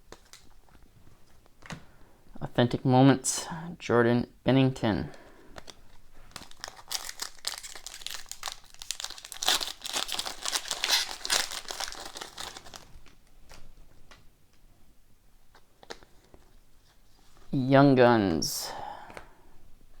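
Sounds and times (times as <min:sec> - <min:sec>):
wrapper crinkling and tearing: 0:00.0 - 0:01.7, 0:05.6 - 0:13.7.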